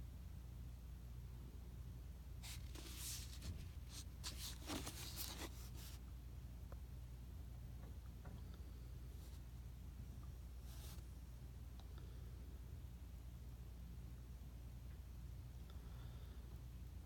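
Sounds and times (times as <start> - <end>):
books rustling and sliding: 2.4 - 6.0.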